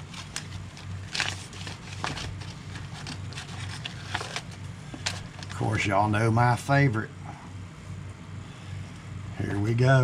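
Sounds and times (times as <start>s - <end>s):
packaging crinkling and clicking: 0.0s - 5.6s
steady low hum: 0.0s - 10.0s.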